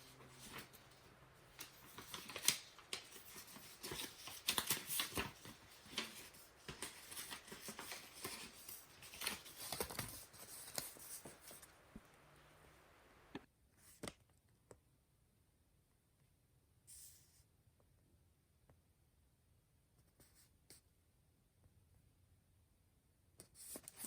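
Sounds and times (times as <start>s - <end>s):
handling small parts and packaging: 0.0s - 12.3s.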